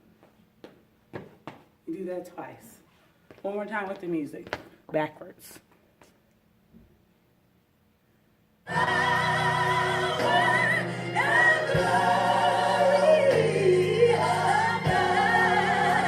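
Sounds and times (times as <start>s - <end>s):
gospel choir singing: 8.7s - 16.0s.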